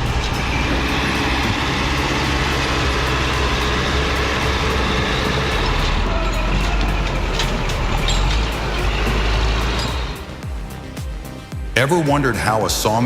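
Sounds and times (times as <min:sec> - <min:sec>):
heavy machine engine running: 0:00.0 - 0:10.4.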